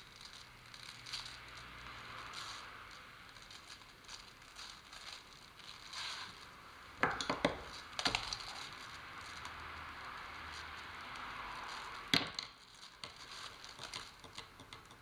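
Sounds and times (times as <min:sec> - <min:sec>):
plastic sheeting crinkling: 0:00.0 - 0:14.4.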